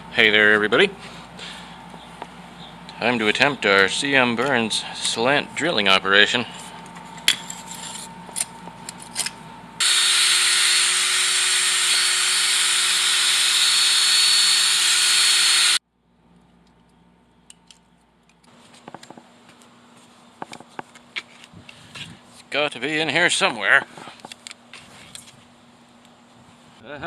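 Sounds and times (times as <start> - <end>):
power drill boring into earth: 9.8 - 15.8.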